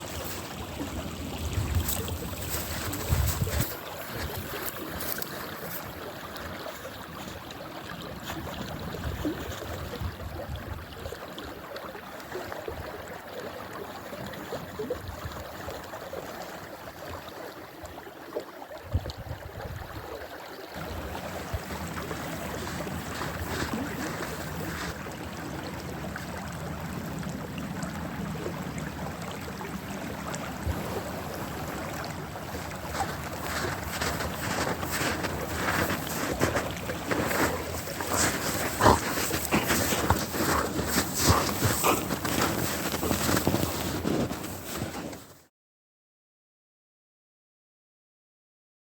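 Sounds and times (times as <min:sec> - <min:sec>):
wind on microphone: 0:01.3 - 0:05.3, 0:18.9 - 0:20.1.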